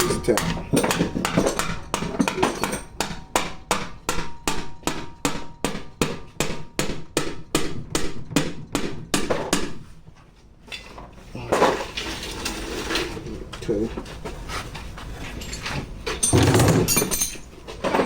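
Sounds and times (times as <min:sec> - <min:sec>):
hammer tapping on metal: 0:00.0 - 0:09.9.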